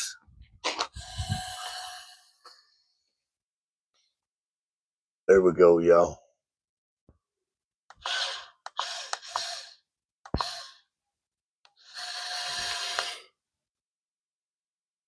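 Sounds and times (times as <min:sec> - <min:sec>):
person breathing close: 0:00.8 - 0:03.2, 0:07.9 - 0:11.0, 0:11.7 - 0:13.4.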